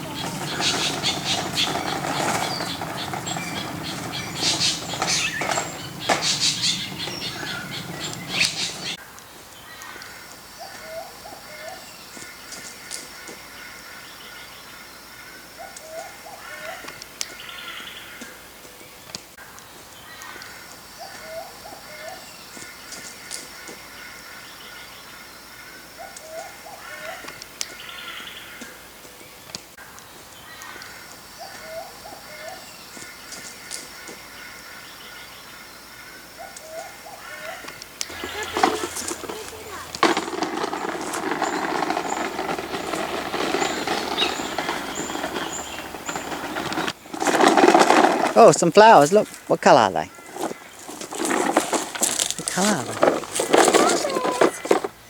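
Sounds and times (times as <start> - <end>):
birds chirping: 0.0 - 9.0, 31.4 - 55.0
crunching footsteps on dry track: 0.0 - 9.0, 38.0 - 55.0.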